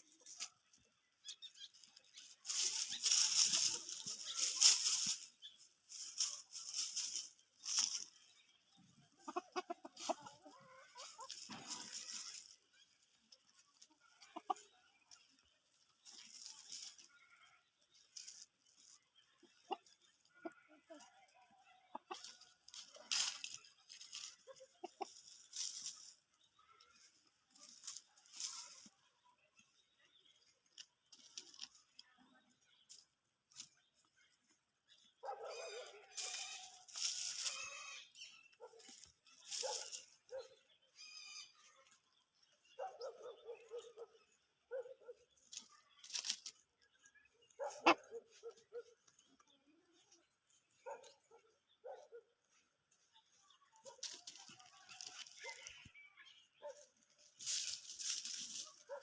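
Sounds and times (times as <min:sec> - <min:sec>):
scratchy rustling: 0:00.0 - 0:08.5, 0:09.2 - 0:20.0, 0:22.1 - 0:29.0, 0:35.2 - 0:38.0, 0:38.6 - 0:40.4, 0:56.7 - 0:59.0
chicken clucking: 0:00.0 - 0:59.0.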